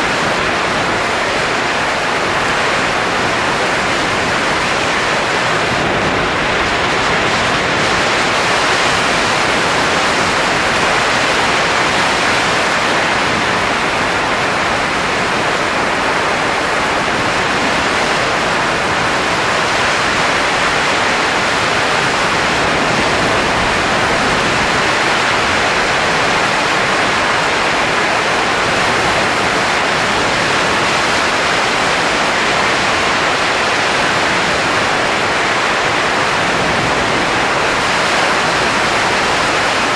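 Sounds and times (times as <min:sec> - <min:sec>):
blowing air rushing: 0:00.0 - 0:31.5.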